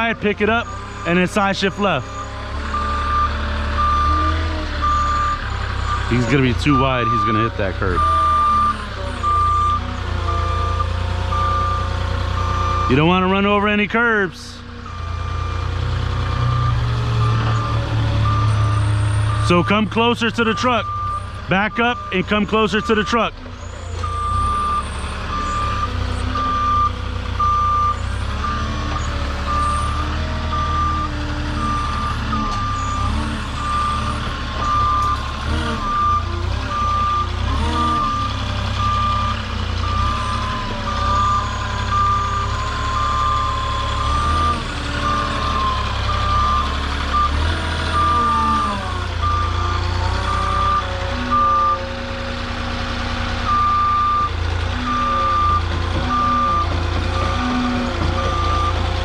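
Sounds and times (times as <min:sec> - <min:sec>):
forklift engine running: 0:00.0 - 0:59.0
backup alarm beeps: 0:04.8 - 0:10.4, 0:29.5 - 0:35.2, 0:37.9 - 0:47.4.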